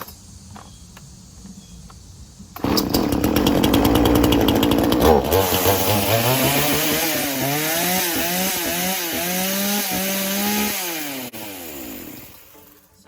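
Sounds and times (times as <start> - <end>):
chainsaw engine running: 2.6 - 12.9.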